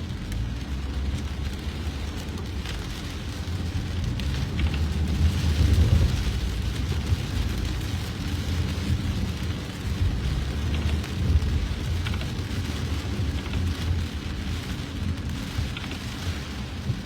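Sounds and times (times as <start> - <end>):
heavy rain falling: 0.0 - 17.0
low rumble: 0.0 - 17.0.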